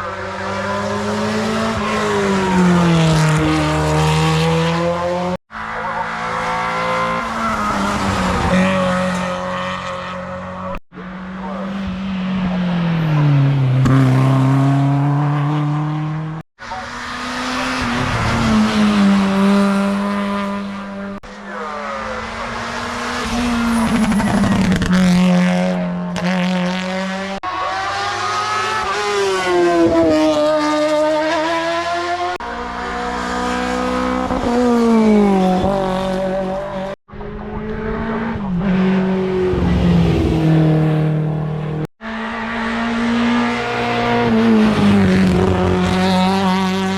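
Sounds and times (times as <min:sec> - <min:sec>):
race car engines revving: 0:00.0 - 0:46.9.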